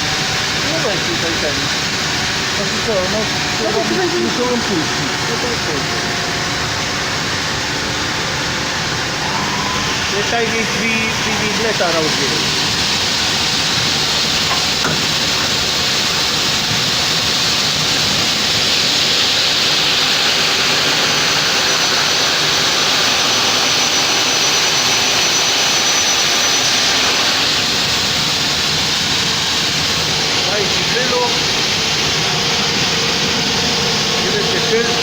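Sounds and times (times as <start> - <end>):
faint high whine: 0.0 - 15.4
coolant spray hiss: 0.0 - 35.0.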